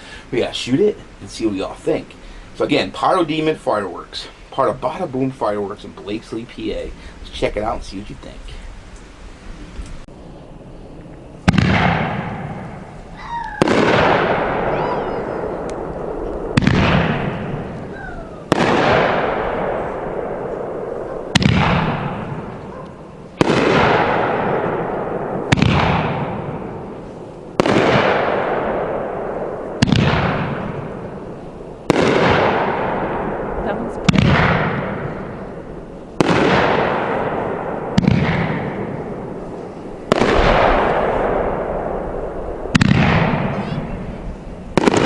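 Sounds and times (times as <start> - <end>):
firework rumble and crackle: 0.0 - 45.0
firework shell bangs: 11.5 - 15.0.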